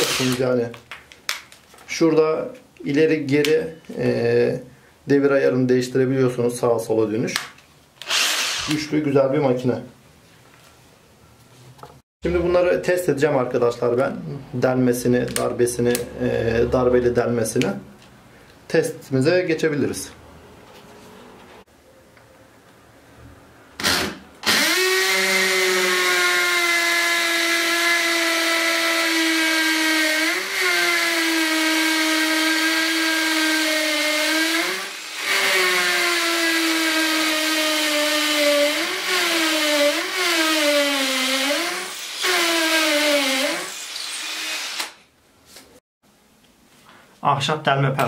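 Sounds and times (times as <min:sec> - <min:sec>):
cordless drill motor whine: 0:08.0 - 0:08.7.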